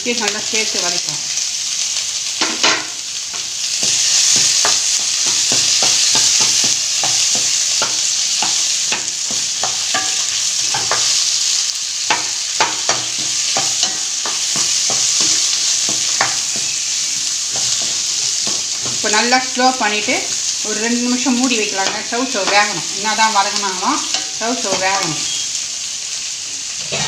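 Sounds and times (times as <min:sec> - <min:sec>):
food sizzling in oil: 0:00.0 - 0:27.0
utensil scraping and knocking pan: 0:02.4 - 0:11.2, 0:12.1 - 0:19.3.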